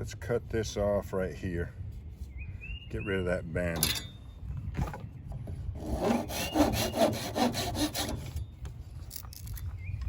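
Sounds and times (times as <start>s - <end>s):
saw cutting plant stalk: 5.8s - 8.3s.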